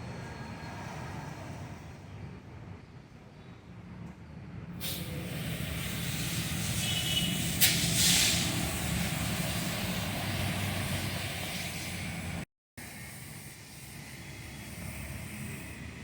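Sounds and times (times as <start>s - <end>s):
high-pressure water spray hissing: 4.8s - 16.0s.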